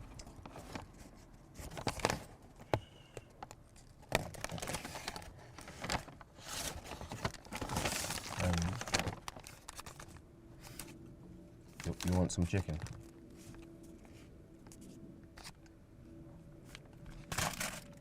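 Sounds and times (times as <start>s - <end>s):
packaging crinkling: 3.5s - 11.0s, 11.8s - 13.2s, 16.7s - 18.0s.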